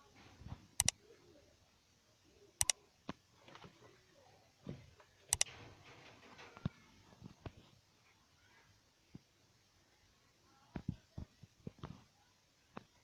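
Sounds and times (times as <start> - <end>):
sharp double clicks: 0.8 - 1.0.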